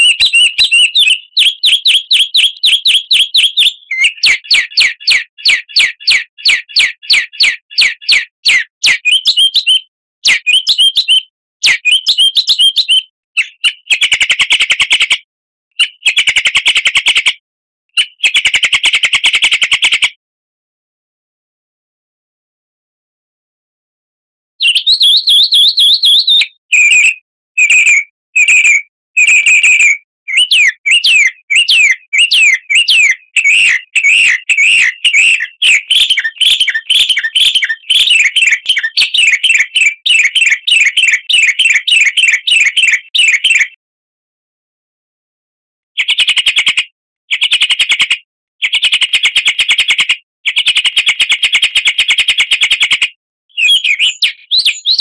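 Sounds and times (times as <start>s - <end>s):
songbird chirps: 0.0s - 14.2s, 24.6s - 43.6s, 53.6s - 55.0s
buzzy bird trills: 29.8s - 43.6s.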